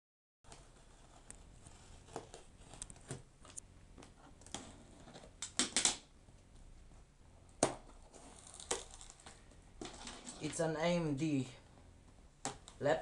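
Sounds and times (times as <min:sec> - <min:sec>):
crackly rustling: 0:00.5 - 0:05.4.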